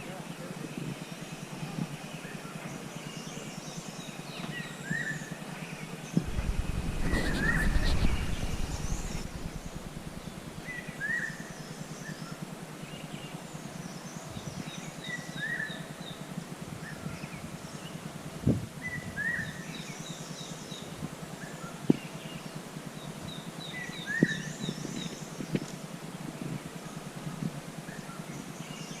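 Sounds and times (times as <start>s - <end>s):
rustling burst: 6.2s - 10.6s.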